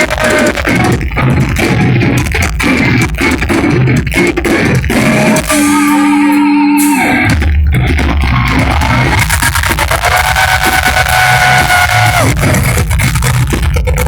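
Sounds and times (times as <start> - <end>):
bass guitar: 0.0 - 14.0
drums: 0.0 - 14.0
electric guitar: 0.0 - 14.0.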